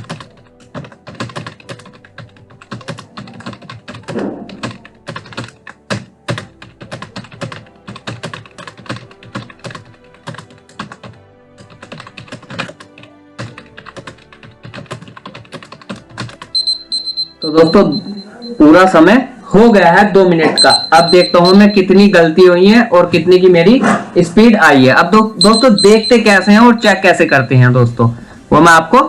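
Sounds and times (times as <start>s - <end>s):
fast typing on keyboard: 0.0s - 18.1s, 20.5s - 22.3s, 25.4s - 27.5s
faint background music: 0.0s - 29.0s.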